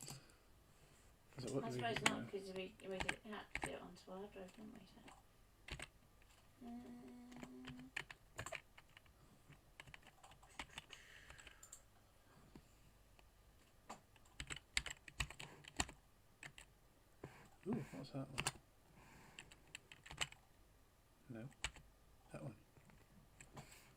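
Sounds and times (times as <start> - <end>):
keyboard keystrokes and clicks: 3.0 - 3.8, 4.4 - 6.4, 7.1 - 11.8, 13.9 - 16.7, 18.3 - 18.6, 19.4 - 20.4, 21.5 - 21.8.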